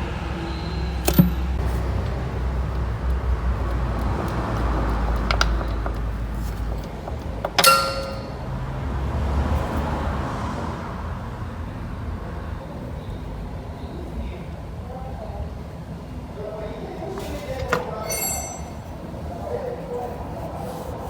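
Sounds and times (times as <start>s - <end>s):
sharp metallic clank: 7.6s - 8.5s, 17.2s - 19.0s.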